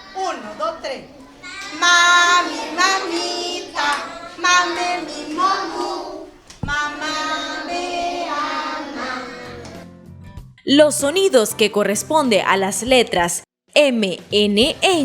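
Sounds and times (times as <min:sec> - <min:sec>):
children singing: 0:00.0 - 0:09.8.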